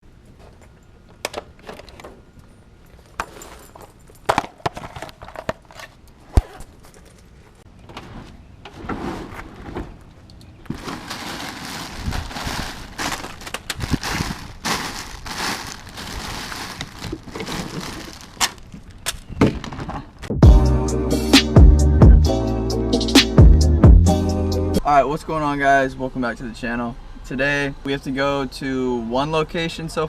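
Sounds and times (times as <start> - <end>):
crinkling rustle: 10.0 - 19.2.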